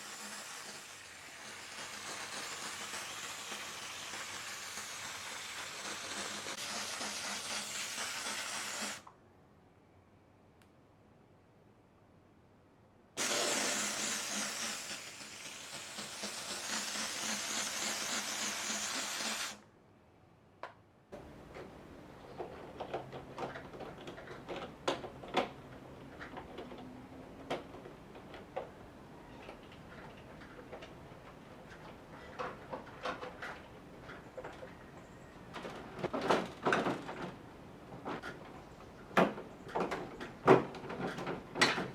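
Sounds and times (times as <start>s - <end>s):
steam cleaner hissing: 0.0s - 9.0s, 13.2s - 19.6s.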